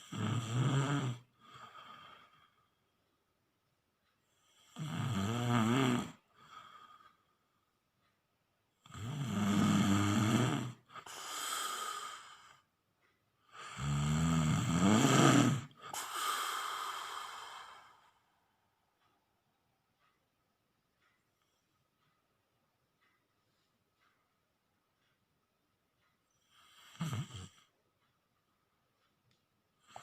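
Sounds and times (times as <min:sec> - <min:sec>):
rattling snores: 0:00.0 - 0:02.6, 0:04.3 - 0:07.3, 0:08.8 - 0:12.7, 0:13.4 - 0:18.3, 0:26.3 - 0:27.8, 0:29.8 - 0:30.0
breathy out-breath: 0:15.8 - 0:18.4.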